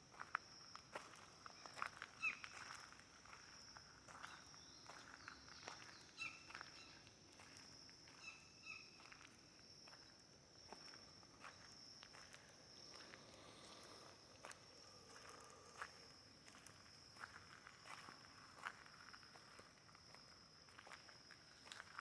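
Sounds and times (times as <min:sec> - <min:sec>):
footsteps crunching on forest floor: 0:09.9 - 0:20.2.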